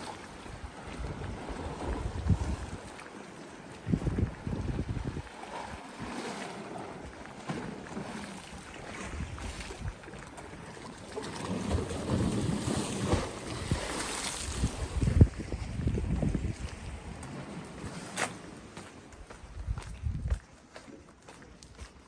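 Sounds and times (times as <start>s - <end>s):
small waves lapping at shore: 0.0s - 22.0s
wind buffeting microphone: 0.4s - 3.0s, 3.8s - 6.2s, 8.5s - 10.0s, 11.7s - 18.1s, 19.2s - 20.5s.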